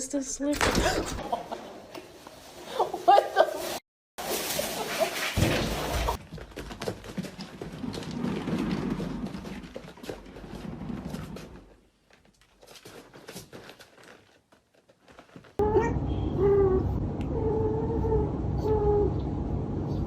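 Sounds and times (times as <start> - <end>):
rustling: 2.0 - 15.6.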